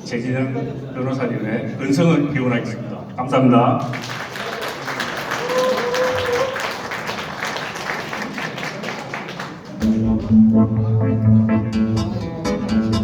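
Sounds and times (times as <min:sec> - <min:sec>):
audience applauding: 0:03.8 - 0:09.8.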